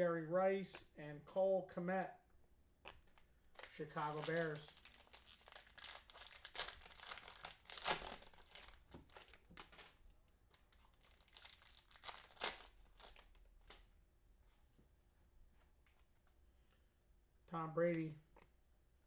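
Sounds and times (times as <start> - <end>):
cellophane crinkling and tearing: 2.8 - 13.8.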